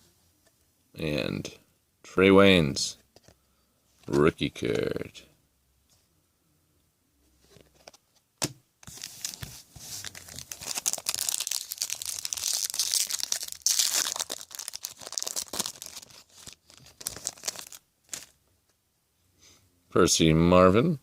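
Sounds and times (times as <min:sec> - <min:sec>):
card pack wrapper tearing and crinkling: 0:08.8 - 0:18.4.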